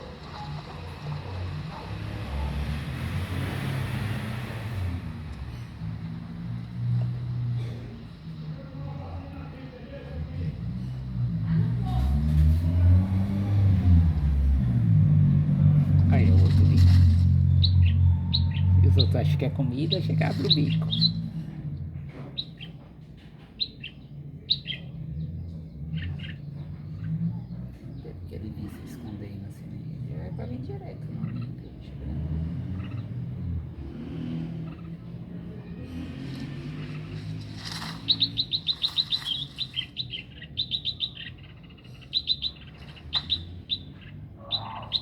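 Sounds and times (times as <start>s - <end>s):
small bird chirping: 16.0s - 22.8s, 23.4s - 45.0s.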